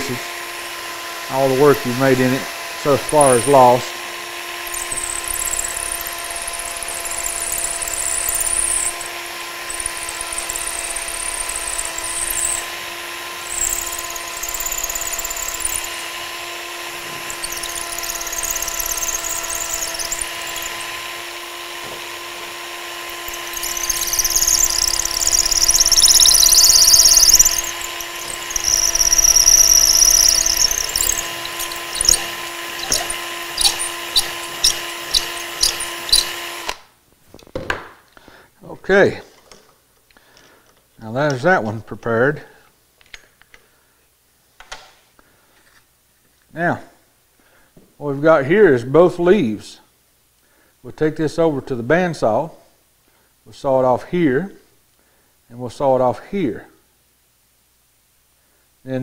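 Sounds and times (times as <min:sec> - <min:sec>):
electric drill running: 0:00.0 - 0:36.9
drill bit squealing in wood: 0:01.0 - 0:36.8
sharp ticks: 0:23.2 - 0:32.2.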